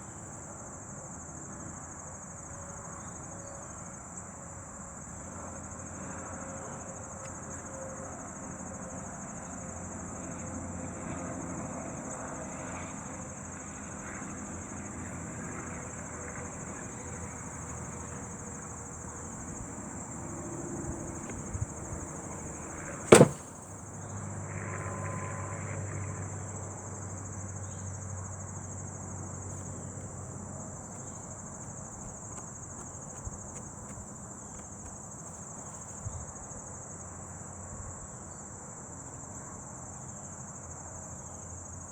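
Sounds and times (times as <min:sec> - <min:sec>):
sharp knock: 0:23.1 - 0:23.4.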